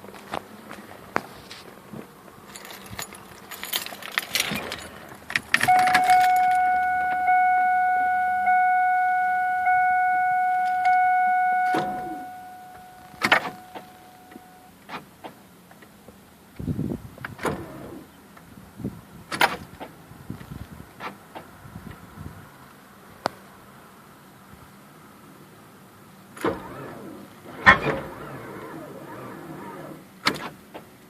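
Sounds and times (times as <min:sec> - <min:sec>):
car keys jangling: 0:02.4 - 0:14.6
car warning chime dinging: 0:05.6 - 0:14.7.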